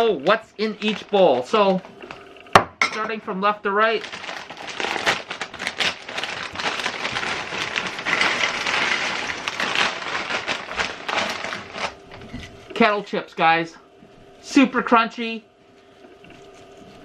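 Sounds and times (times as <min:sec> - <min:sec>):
potato chips pouring into bowl: 0:03.9 - 0:12.0.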